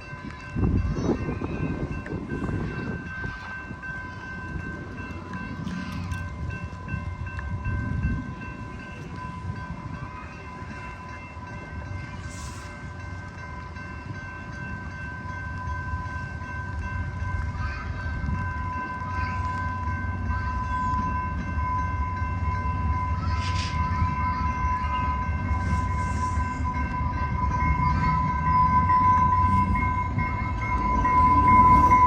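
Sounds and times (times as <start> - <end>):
train rumbling: 0.0 - 32.0
high multi-tone squeal: 23.0 - 32.0.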